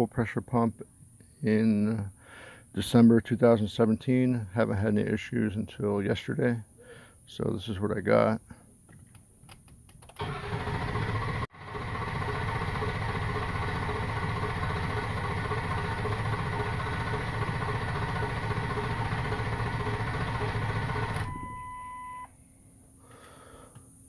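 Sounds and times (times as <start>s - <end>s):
starter cranking engine: 10.1s - 21.8s.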